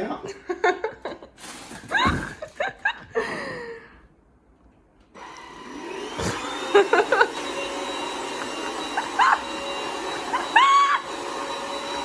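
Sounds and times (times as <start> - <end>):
vacuum cleaner motor whining: 5.2 - 12.0.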